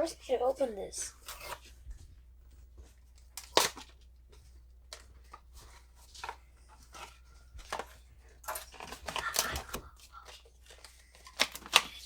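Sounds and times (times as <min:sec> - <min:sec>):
plastic packaging crinkling: 0:04.9 - 0:12.0.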